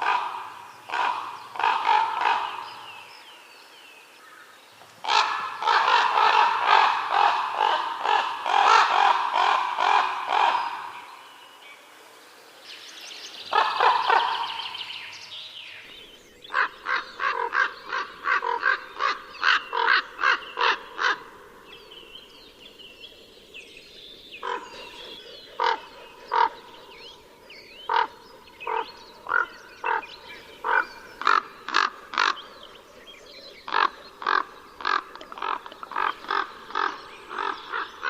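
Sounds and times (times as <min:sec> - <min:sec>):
crows cawing: 0:00.0 - 0:02.6, 0:05.0 - 0:11.0, 0:16.5 - 0:21.4, 0:24.4 - 0:25.0, 0:25.6 - 0:26.6, 0:27.9 - 0:32.4, 0:33.7 - 0:38.0.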